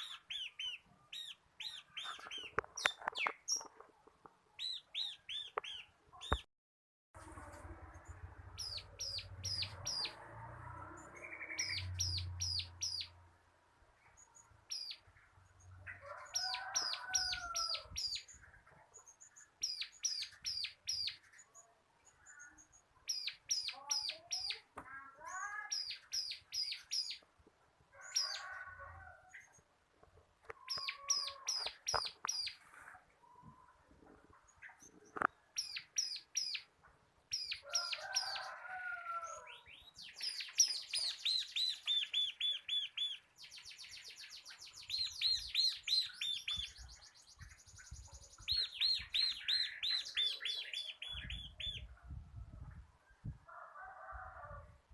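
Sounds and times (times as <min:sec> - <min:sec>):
bird singing high sharp chirps: 0:00.0 - 0:03.7, 0:08.0 - 0:10.2, 0:10.9 - 0:13.2, 0:22.1 - 0:27.2, 0:35.5 - 0:36.7, 0:39.6 - 0:51.9
lower curving bird calls: 0:30.4 - 0:33.8, 0:39.5 - 0:51.9.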